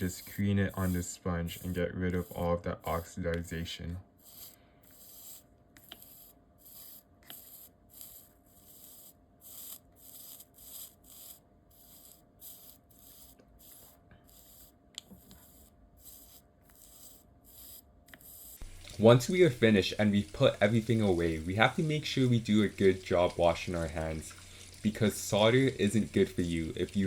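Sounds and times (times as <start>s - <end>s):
soldering tip rubbing on sponge: 0.0s - 18.8s.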